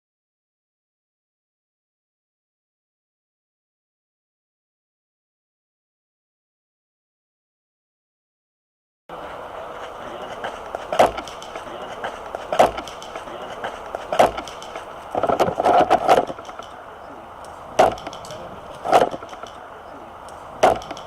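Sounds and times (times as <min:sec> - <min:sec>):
airsoft guns firing: 0:09.8 - 0:16.8, 0:17.7 - 0:19.6, 0:20.6 - 0:21.0.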